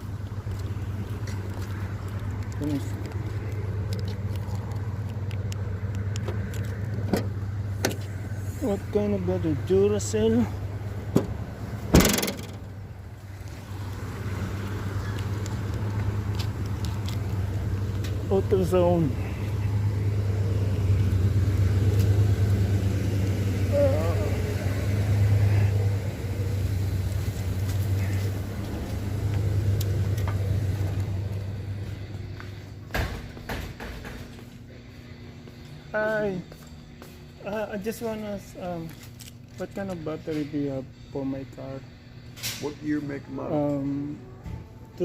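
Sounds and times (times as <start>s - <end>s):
low hum inside car: 0.0s - 33.9s
vehicle engine rumble: 0.0s - 45.0s.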